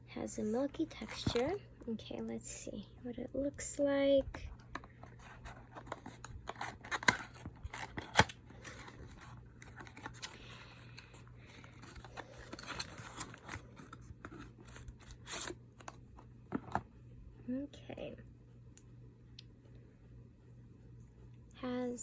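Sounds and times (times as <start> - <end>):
faint low hum: 0.0 - 22.0.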